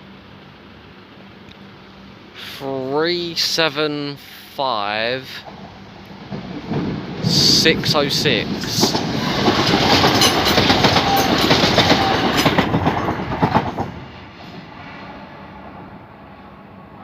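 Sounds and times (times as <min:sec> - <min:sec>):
electric train passing: 0:00.0 - 0:17.0
train wheels clattering over rails: 0:05.4 - 0:14.9.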